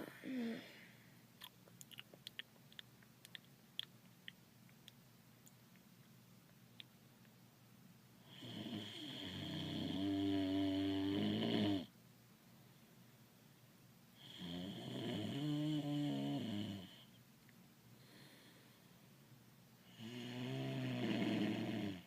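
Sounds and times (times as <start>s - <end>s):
cartoon snoring: 8.3s - 11.9s, 20.0s - 22.0s.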